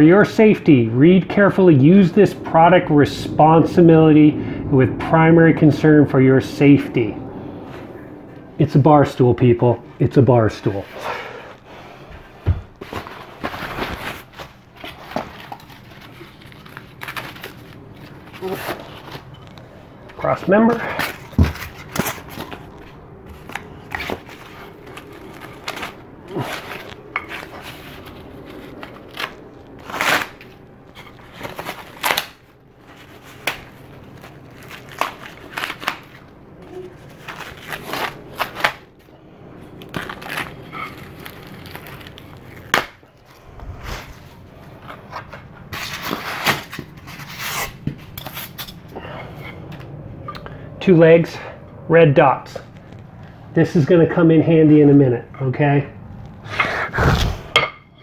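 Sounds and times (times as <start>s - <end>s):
packaging tearing and crinkling: 12.9s - 19.7s, 20.7s - 39.0s, 39.7s - 48.7s.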